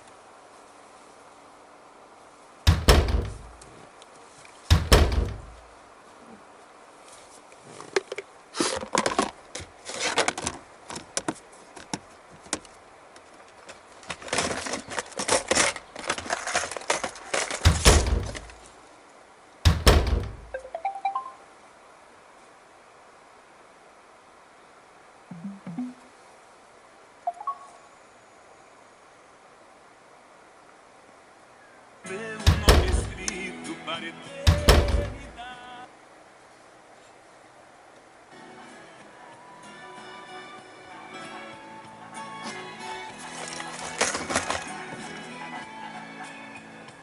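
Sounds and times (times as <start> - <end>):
heavy hollow thumps: 2.7 - 3.6, 4.7 - 5.6, 17.7 - 18.6, 19.7 - 20.6, 32.5 - 33.3, 34.5 - 35.4.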